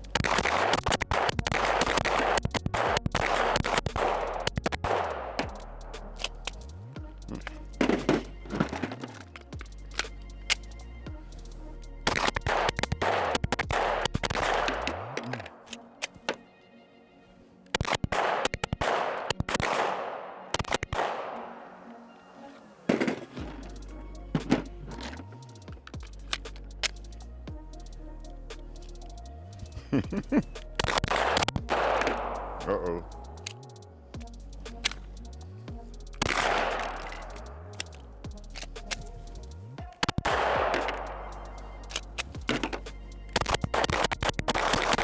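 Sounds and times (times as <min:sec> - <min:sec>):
pistol shots: 0:00.2 - 0:05.2, 0:12.1 - 0:16.2, 0:17.8 - 0:21.6, 0:30.8 - 0:32.8, 0:36.2 - 0:37.3.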